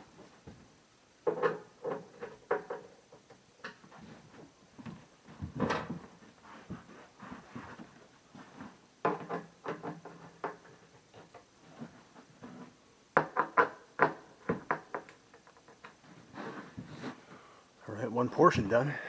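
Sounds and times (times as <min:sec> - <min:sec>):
wooden parts knocking and clattering: 0:01.2 - 0:03.9, 0:04.8 - 0:06.2, 0:09.0 - 0:12.6, 0:13.2 - 0:16.0.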